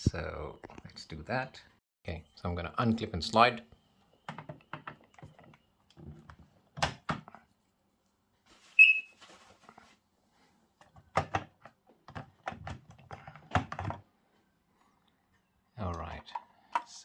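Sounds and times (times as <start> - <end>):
alarm chirp: 8.8 - 9.2.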